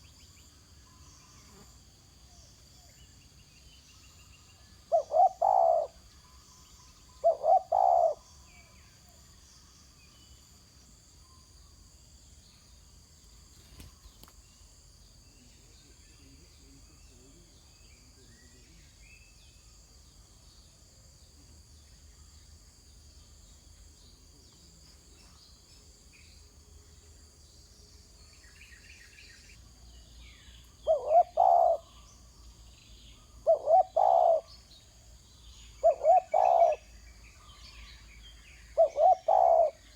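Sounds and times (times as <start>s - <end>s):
faint high insect buzz: 0.0s - 39.9s
dove cooing: 4.8s - 6.1s, 7.2s - 8.3s, 30.8s - 32.0s, 33.4s - 34.6s, 35.8s - 36.8s, 38.7s - 39.9s.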